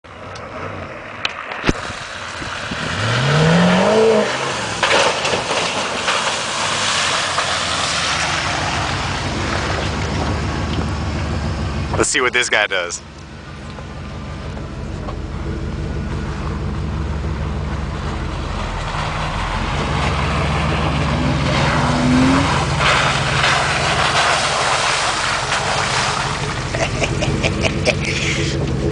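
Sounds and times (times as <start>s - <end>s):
vehicle engine revving: 0.3s - 28.9s
burst of noise: 1.6s - 9.7s
loud rushing noise: 16.6s - 28.9s.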